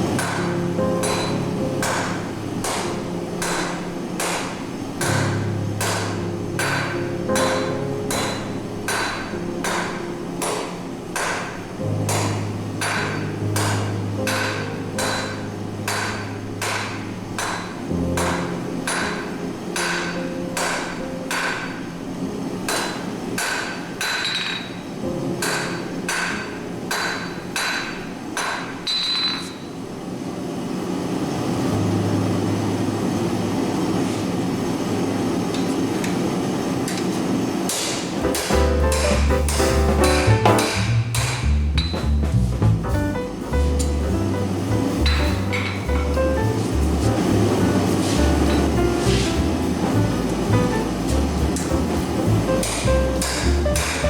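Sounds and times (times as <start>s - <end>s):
background music: 0.0s - 28.6s, 38.2s - 54.0s
hammer striking steel on anvil: 0.2s - 21.8s, 22.7s - 29.7s, 37.7s - 42.2s, 52.6s - 54.0s.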